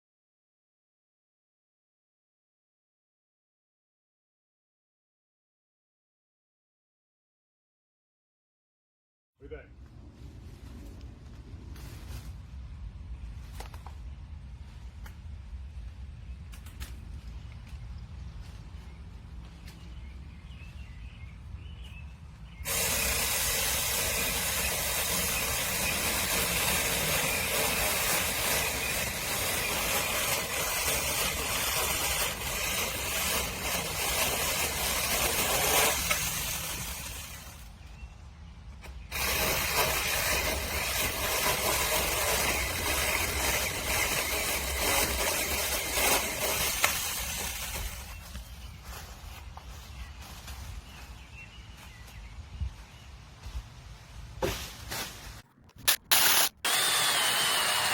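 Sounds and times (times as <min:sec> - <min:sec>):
electric chainsaw running: 0:22.7 - 0:37.6, 0:39.1 - 0:48.2, 0:55.8 - 0:57.9.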